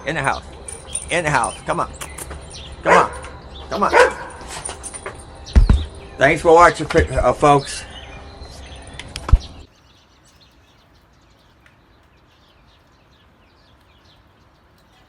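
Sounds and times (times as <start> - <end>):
small birds chirping: 0.0 - 15.0
sharp thump: 5.5 - 6.0.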